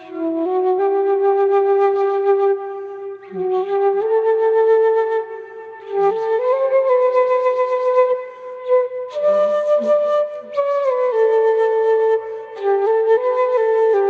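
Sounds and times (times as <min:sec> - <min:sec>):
bamboo flute slow melody: 0:00.0 - 0:14.0
flute player breathing: 0:08.1 - 0:09.1, 0:12.1 - 0:12.8.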